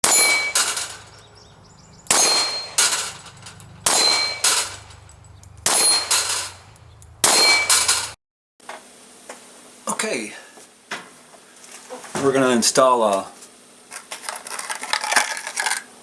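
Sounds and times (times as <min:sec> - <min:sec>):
metallic clanging: 0:00.0 - 0:08.2.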